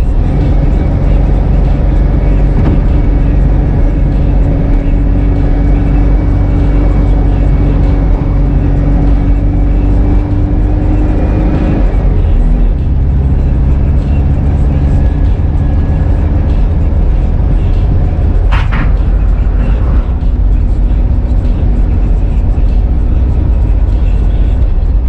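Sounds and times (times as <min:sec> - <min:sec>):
car engine running: 0:00.0 - 0:25.0.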